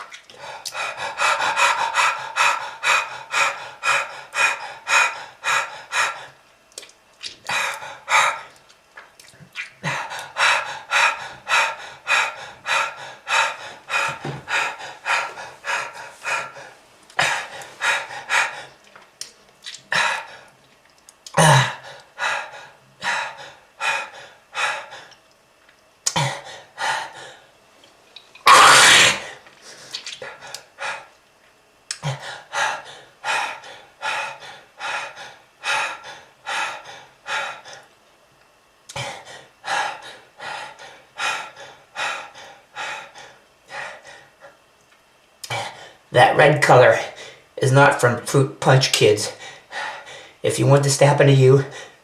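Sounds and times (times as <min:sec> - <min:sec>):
person coughing: 0:21.4 - 0:21.8, 0:28.5 - 0:29.3.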